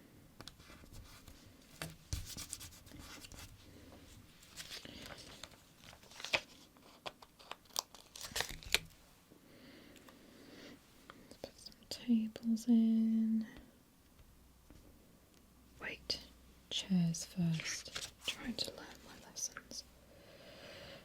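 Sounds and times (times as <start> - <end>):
paper stickers rustling and scraping: 4.4 - 8.9, 17.5 - 18.7.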